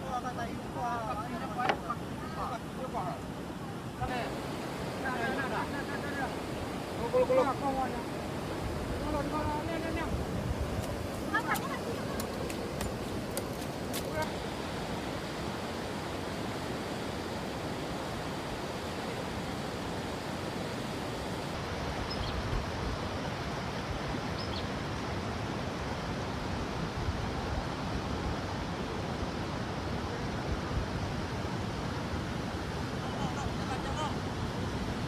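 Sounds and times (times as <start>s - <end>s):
steady rushing noise: 0.0s - 23.1s.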